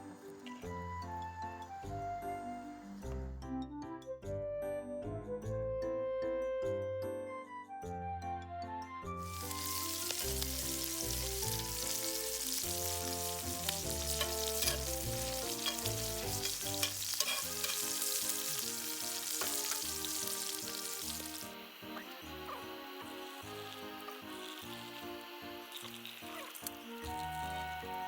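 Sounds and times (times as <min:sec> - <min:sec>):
background music: 0:00.0 - 0:28.0
food sizzling in a pan: 0:09.2 - 0:28.0.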